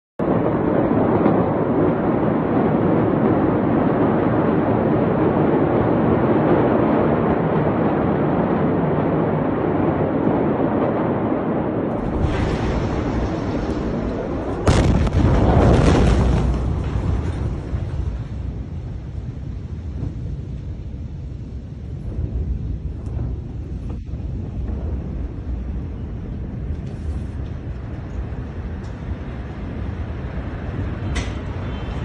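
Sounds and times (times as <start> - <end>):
loud explosion blast: 0.2 - 26.7
deep rumble: 0.2 - 32.0
steady loud noise: 0.2 - 32.0.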